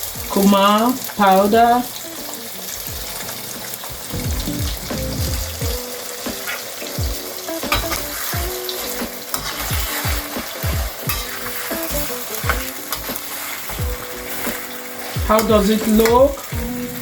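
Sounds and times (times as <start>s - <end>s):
chicken wings sizzling in oil: 0.0s - 17.0s
utensil scraping a pan: 7.7s - 16.5s.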